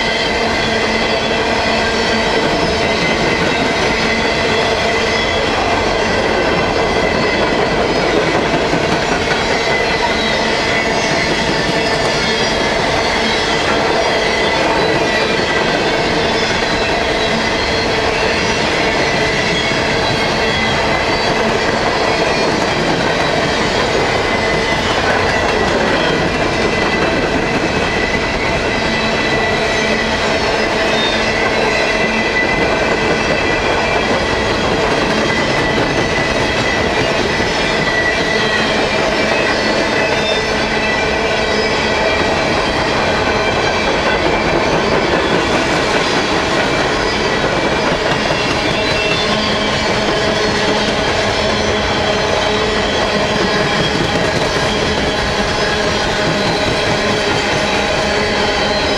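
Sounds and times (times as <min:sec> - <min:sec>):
rumble and clatter of train wheels: 0:00.0 - 0:58.9.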